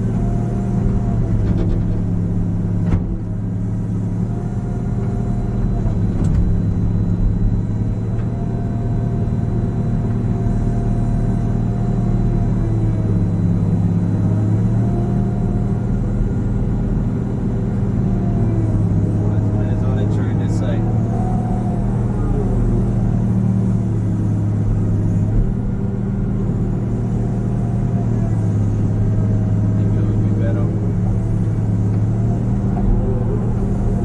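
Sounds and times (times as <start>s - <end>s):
engine whine: 0.0s - 34.0s
excavator engine drone: 0.0s - 34.0s.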